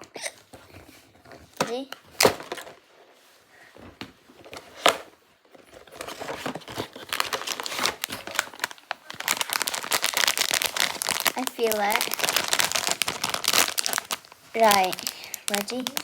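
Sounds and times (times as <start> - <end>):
packaging crumpling: 5.6 - 16.0
dense crackling: 7.4 - 16.0.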